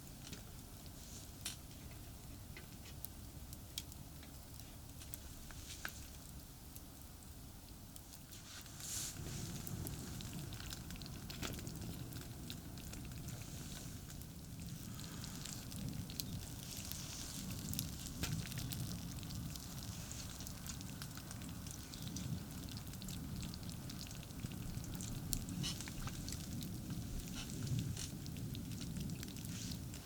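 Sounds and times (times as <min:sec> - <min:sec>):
campfire crackling and popping: 0:00.0 - 0:30.0
distant highway traffic rumble: 0:08.6 - 0:30.0.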